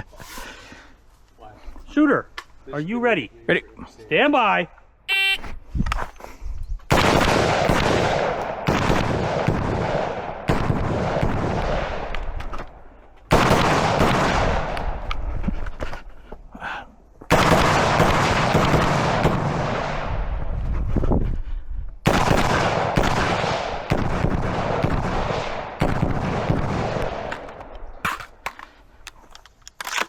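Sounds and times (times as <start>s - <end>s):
rifle shots in rapid strings: 6.9s - 12.2s, 13.3s - 15.0s, 17.3s - 20.1s, 22.0s - 27.5s.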